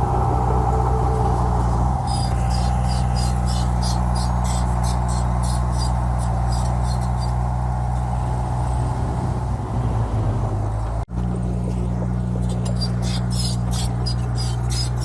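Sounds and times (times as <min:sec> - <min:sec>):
heavy machine diesel engine drone: 0:00.0 - 0:15.0
fast high-pitched chirping: 0:00.5 - 0:07.4.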